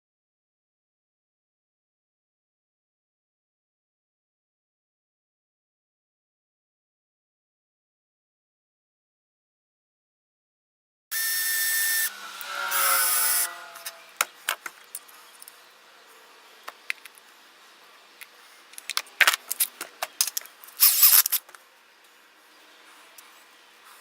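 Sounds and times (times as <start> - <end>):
power drill running: 11.1 - 14.2
clicks of parts handled: 18.2 - 21.6.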